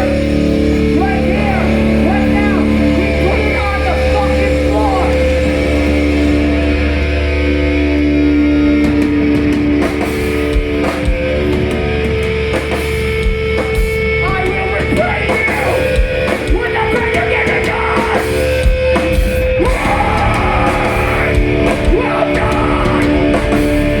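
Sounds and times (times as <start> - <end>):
heavy guitars: 0.0 - 24.0
drum hits: 18.1 - 24.0
person singing: 19.6 - 23.8.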